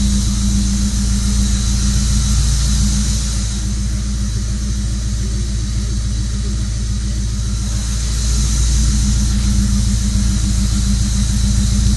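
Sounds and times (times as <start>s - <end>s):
car engine running with hiss: 0.0s - 11.9s.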